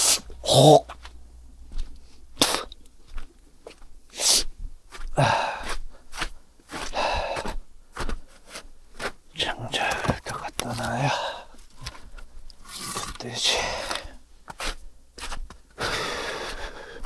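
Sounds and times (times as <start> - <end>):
man grunting and exhaling: 0.4 - 0.9, 5.2 - 5.7.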